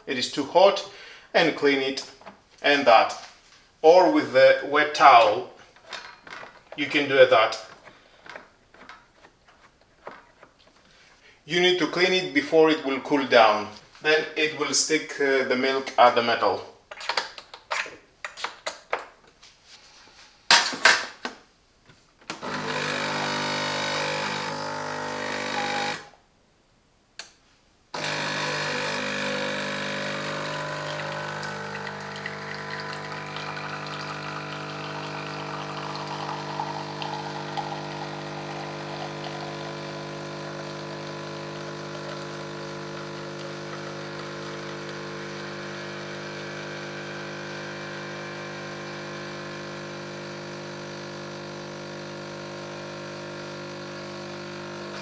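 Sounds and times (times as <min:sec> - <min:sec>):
kitchen appliance humming: 0:22.3 - 0:26.2, 0:28.0 - 0:55.0.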